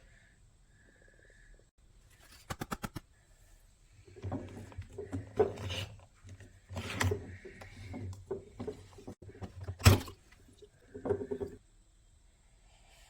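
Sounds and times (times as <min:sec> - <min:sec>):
objects rustling and knocking: 0:04.0 - 0:11.6.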